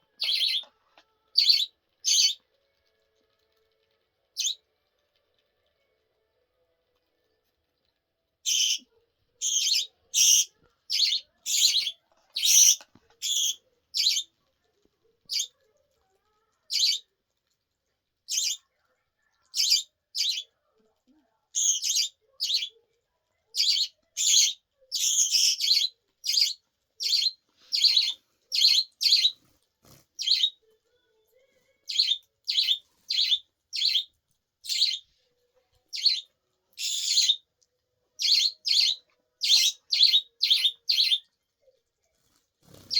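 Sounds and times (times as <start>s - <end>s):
budgerigar chirping: 0.2s - 0.7s, 1.4s - 2.4s, 8.5s - 8.8s, 9.4s - 14.3s, 19.6s - 20.5s, 21.6s - 22.7s, 23.6s - 29.4s, 30.2s - 30.6s, 31.9s - 34.1s, 34.7s - 35.0s, 36.0s - 36.2s, 36.8s - 37.4s, 38.2s - 41.2s.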